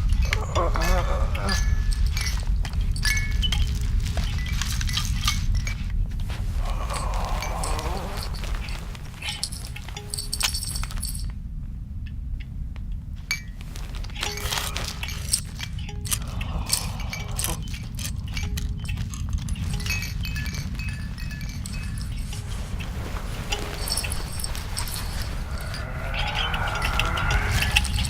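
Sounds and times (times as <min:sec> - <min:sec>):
bright tinkling: 0:00.0 - 0:11.4, 0:13.3 - 0:28.0
metallic and glassy clinks: 0:00.0 - 0:11.4, 0:13.3 - 0:28.0
low rumble: 0:13.6 - 0:28.0.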